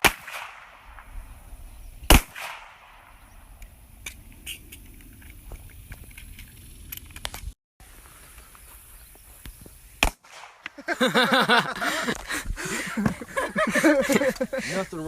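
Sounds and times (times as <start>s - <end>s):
handgun shot: 0.0s - 1.1s, 2.1s - 3.2s, 10.0s - 10.8s
person speaking: 13.8s - 15.0s.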